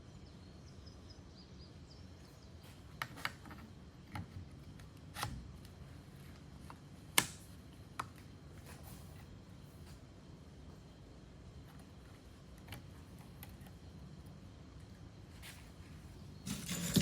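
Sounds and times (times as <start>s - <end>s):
low room hum: 0.0s - 17.0s
objects clicking and knocking: 16.5s - 17.0s.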